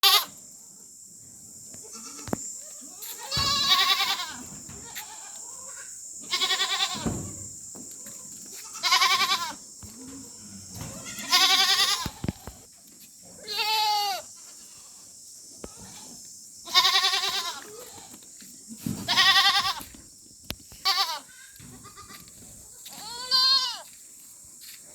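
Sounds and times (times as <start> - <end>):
goats bleating: 1.9 - 7.5, 8.6 - 9.6, 10.7 - 12.5, 13.4 - 14.3, 16.7 - 18.2, 19.1 - 19.9, 20.8 - 23.9.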